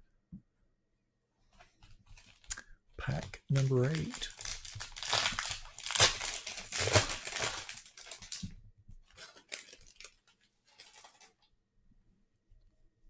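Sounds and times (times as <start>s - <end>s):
cards and wrapper rustling: 2.1s - 2.6s, 3.2s - 11.4s
foil wrapper tearing and crinkling: 3.5s - 8.5s, 9.1s - 11.4s.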